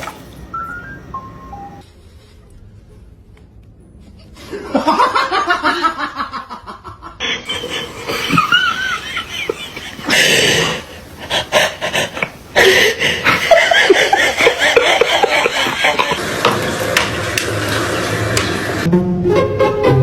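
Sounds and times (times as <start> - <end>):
people laughing: 4.5 - 16.8.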